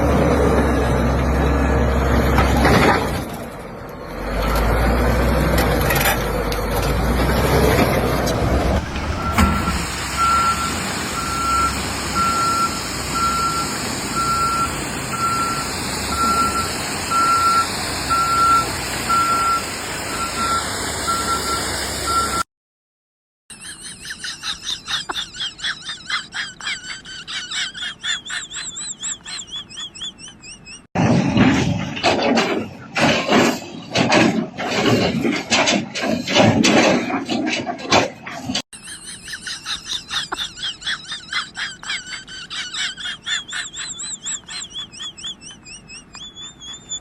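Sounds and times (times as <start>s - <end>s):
low engine rumble: 5.6s - 22.4s
reversing alarm beeping: 8.4s - 22.4s.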